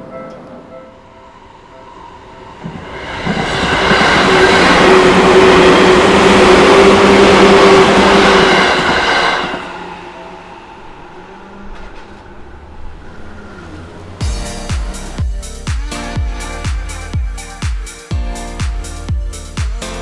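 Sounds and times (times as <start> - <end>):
electric train passing: 0.0 - 17.0
train wheels rolling: 2.1 - 14.2
train motor hum: 2.7 - 15.6.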